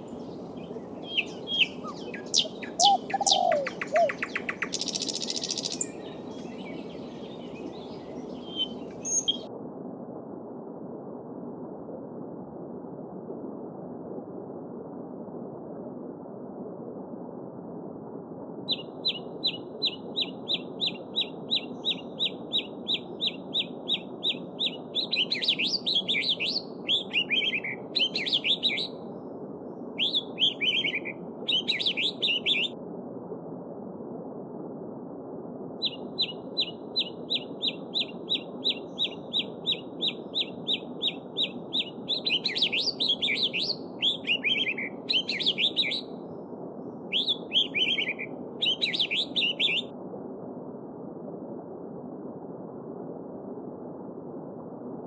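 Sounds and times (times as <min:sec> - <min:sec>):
songbird singing: 0:00.0 - 0:09.5, 0:18.7 - 0:29.0, 0:30.0 - 0:32.8, 0:35.8 - 0:46.2, 0:47.1 - 0:49.9.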